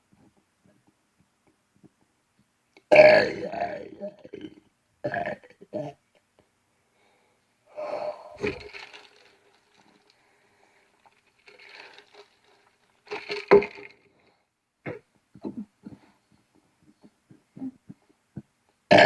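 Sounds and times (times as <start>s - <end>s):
man wheezing and sniffing: 7.7s - 9.0s.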